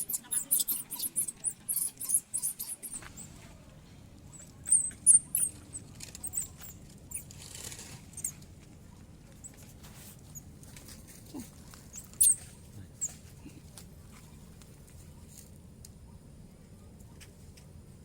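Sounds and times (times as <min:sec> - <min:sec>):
baby monkey squeaking: 0:00.0 - 0:03.3, 0:04.4 - 0:08.4, 0:11.9 - 0:13.2
rustle: 0:05.7 - 0:15.7.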